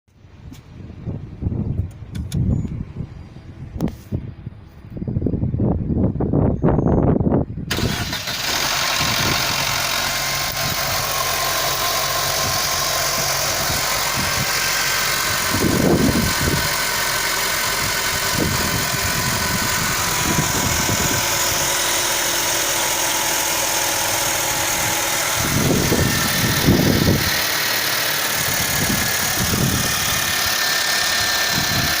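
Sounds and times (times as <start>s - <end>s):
car engine idling: 7.7s - 32.0s.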